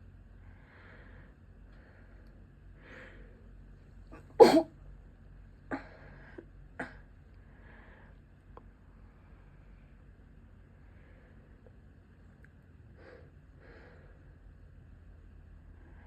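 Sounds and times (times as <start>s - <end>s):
faint breathy inhales: 0.4s - 3.5s
person sneezing: 4.2s - 4.7s.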